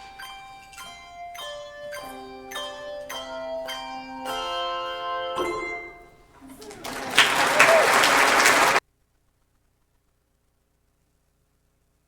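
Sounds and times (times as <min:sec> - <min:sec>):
bell-like struck notes: 0:00.0 - 0:06.4.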